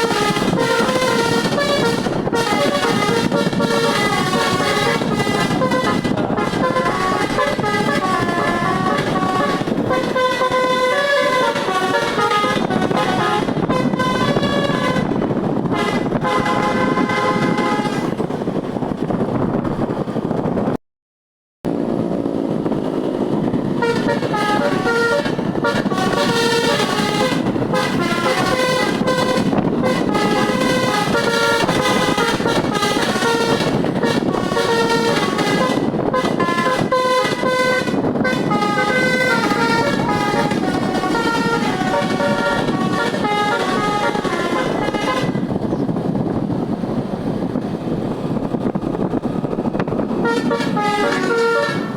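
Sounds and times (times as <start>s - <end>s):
musical air horn melodies: 0.0s - 18.2s, 23.6s - 45.6s, 50.0s - 51.9s
bus engine: 0.0s - 20.8s, 21.7s - 51.9s
road noise: 0.0s - 20.8s, 21.6s - 51.9s.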